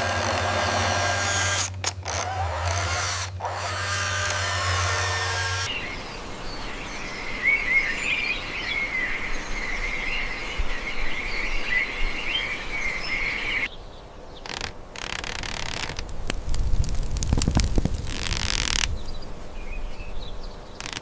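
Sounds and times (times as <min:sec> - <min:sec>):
steady background hiss: 0:00.0 - 0:21.0
small birds chirping: 0:02.6 - 0:21.0
sharp clicks and knocks: 0:20.8 - 0:21.0.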